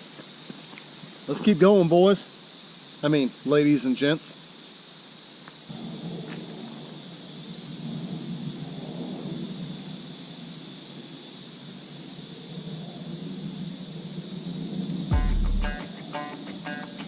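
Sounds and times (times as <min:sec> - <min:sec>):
insects buzzing: 0:00.0 - 0:17.0
low steady rushing noise: 0:14.0 - 0:17.0.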